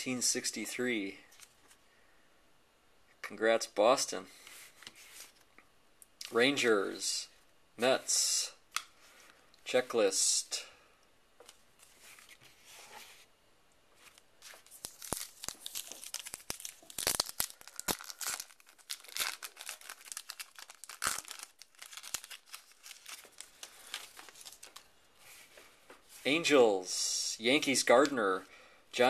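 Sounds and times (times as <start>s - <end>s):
wrapper tearing and crinkling: 14.1s - 24.9s.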